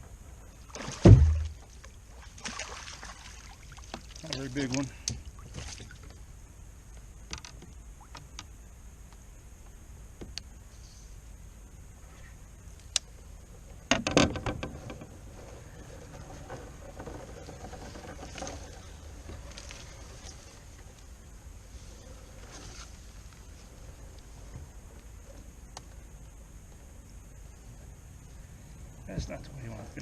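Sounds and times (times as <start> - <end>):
loud scuffling knock: 1.0 - 1.6.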